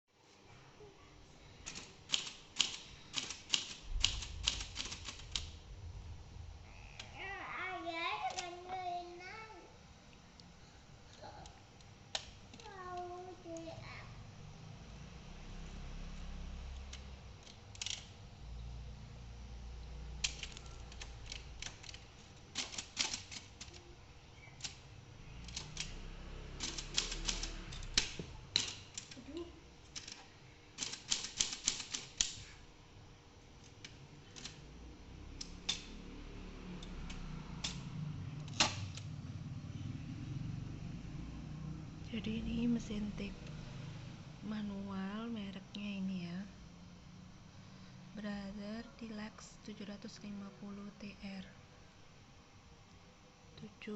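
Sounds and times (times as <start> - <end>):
typewriter keys clacking: 1.6 - 5.6, 16.8 - 18.1, 20.2 - 23.9, 25.4 - 29.3, 30.8 - 32.5, 34.3 - 34.6, 36.9 - 39.1.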